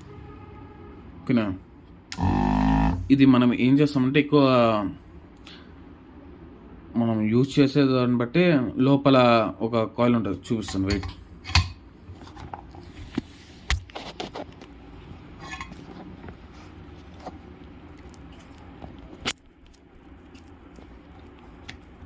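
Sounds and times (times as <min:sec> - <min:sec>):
steady low hum: 0:01.6 - 0:03.8.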